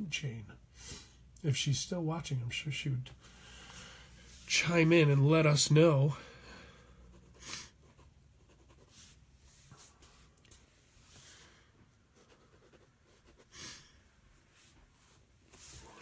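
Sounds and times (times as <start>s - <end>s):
pen scratching on paper: 7.1s - 9.2s, 12.2s - 13.6s.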